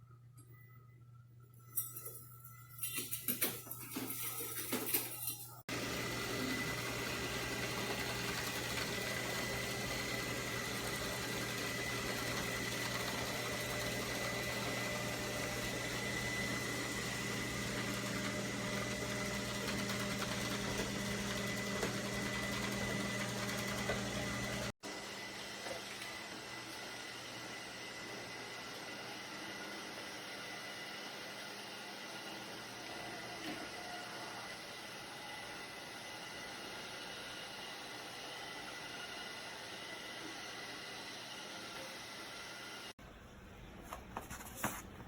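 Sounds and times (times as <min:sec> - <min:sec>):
robot vacuum whirring: 0:05.7 - 0:30.4.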